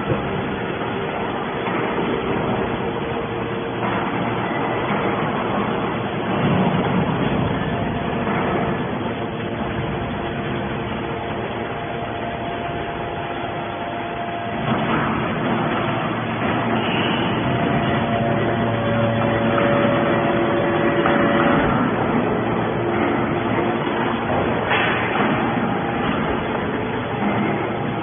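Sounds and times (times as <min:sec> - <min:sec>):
baling machine whining: 0:00.0 - 0:28.0.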